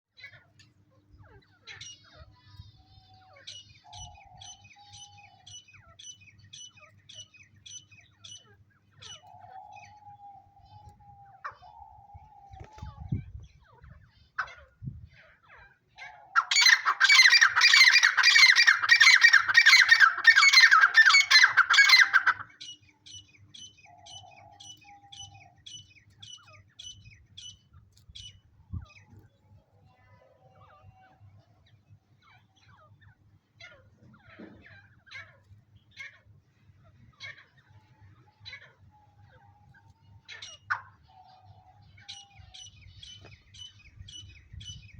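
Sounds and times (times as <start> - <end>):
francolin calling: 16.2 - 27.6.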